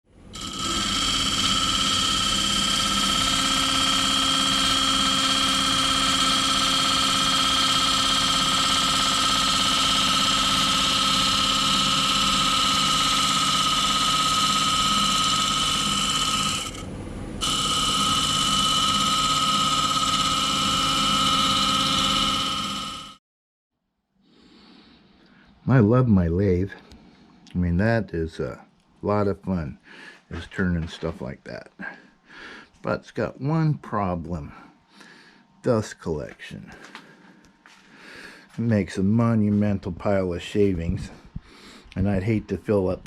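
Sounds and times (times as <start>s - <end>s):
wood lathe whining: 0.3s - 23.2s.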